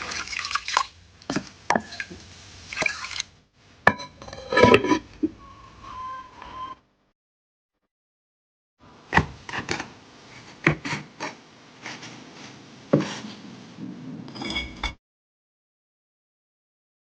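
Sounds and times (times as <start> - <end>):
scraping: 4.1 - 5.4.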